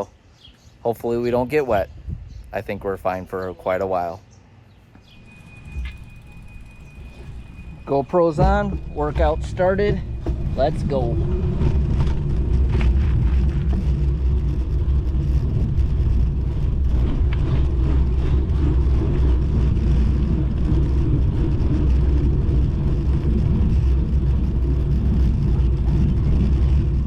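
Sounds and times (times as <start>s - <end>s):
wind rumbling on microphone: 1.1s - 3.4s, 5.2s - 27.0s
bicycle road noise: 4.9s - 27.0s.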